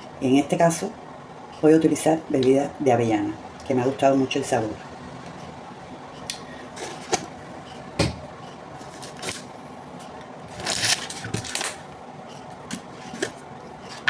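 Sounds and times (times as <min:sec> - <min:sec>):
rustling clatter: 0:06.7 - 0:07.3, 0:10.5 - 0:14.0
objects knocking on counter: 0:08.0 - 0:08.3.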